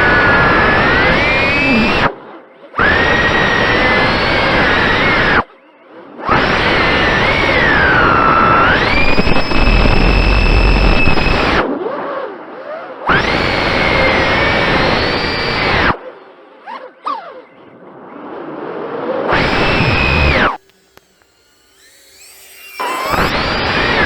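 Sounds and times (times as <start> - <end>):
quadcopter motors whining: 0.0 - 2.2, 2.8 - 5.6, 6.2 - 11.8, 13.1 - 16.0, 19.3 - 24.0.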